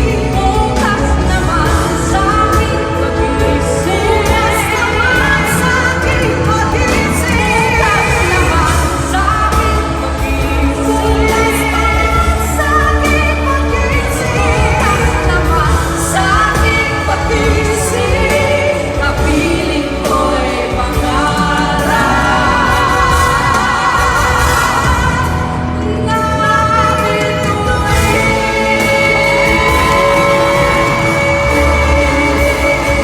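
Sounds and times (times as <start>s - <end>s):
pop song with singing: 0.0s - 33.0s.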